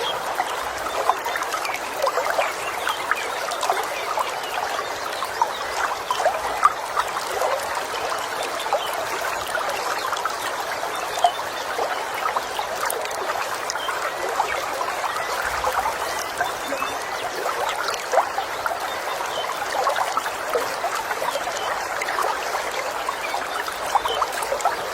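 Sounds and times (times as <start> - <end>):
stream babbling over stones: 0.0 - 24.9
faint bird chirps: 13.8 - 20.0.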